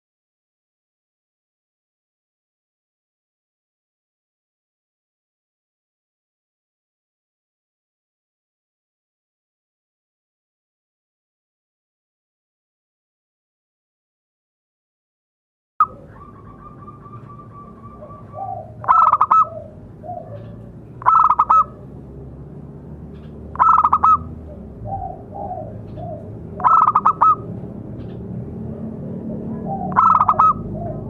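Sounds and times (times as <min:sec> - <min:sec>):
dove cooing: 0:15.8 - 0:21.9, 0:23.5 - 0:27.5, 0:29.2 - 0:31.0.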